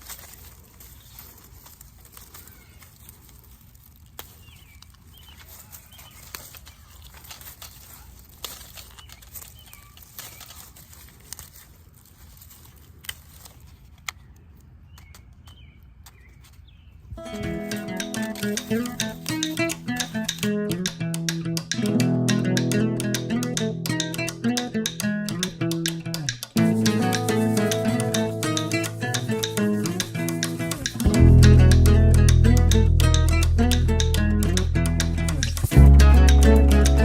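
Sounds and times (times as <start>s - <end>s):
sharp clicks: 17.2s - 37.0s.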